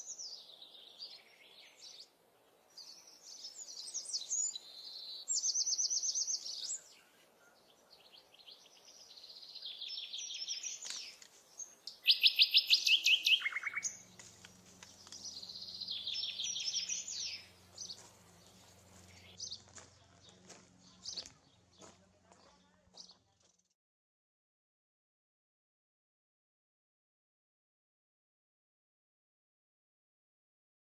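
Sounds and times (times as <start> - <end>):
songbird trilling: 2.8 - 14.2, 14.8 - 19.6.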